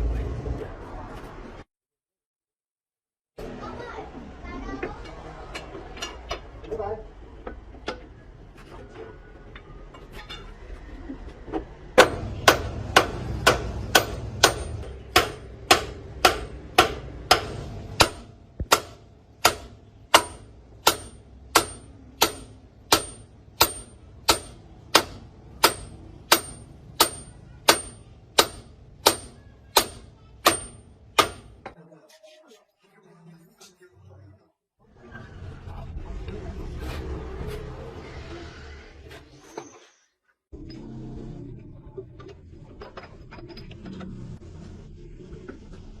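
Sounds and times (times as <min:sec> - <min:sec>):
hammer striking metal: 0:12.0 - 0:31.8.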